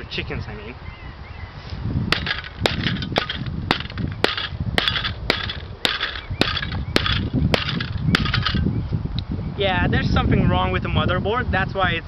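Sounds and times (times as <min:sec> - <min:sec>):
rattle of breaking parts: 0:02.1 - 0:08.6.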